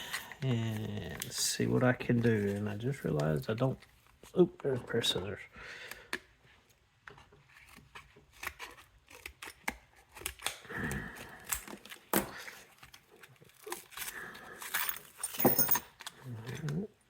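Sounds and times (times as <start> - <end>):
scissors snipping packaging: 7.6 - 10.7.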